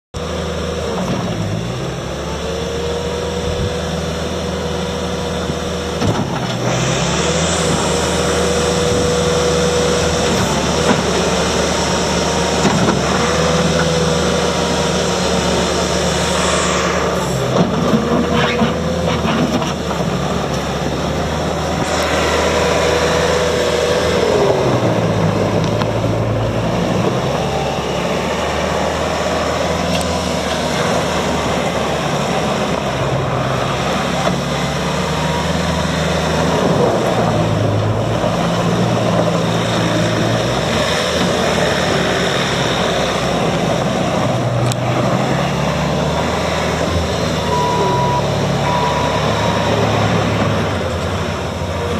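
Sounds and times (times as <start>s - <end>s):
diesel engine revving: 0.1s - 51.9s
thin gliding whines: 14.4s - 17.6s.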